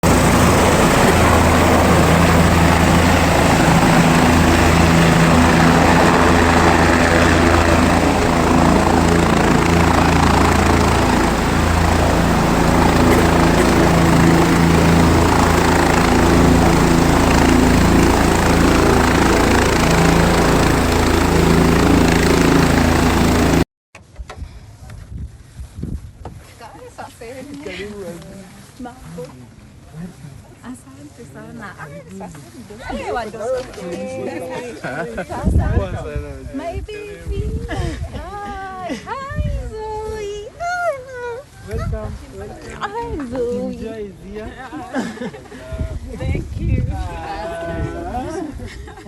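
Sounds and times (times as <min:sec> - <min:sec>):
helicopter rotor and engine: 0:00.0 - 0:23.7, 0:30.8 - 0:45.6.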